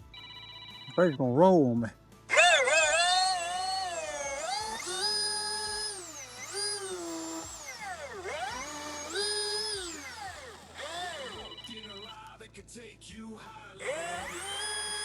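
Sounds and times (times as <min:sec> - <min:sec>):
electric chainsaw cutting: 0:02.3 - 0:12.2, 0:13.8 - 0:15.0.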